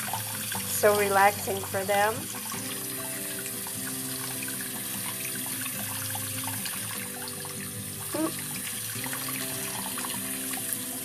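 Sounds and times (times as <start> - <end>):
background music: 0.0 - 11.0
tap water splashing in a sink: 0.0 - 11.0.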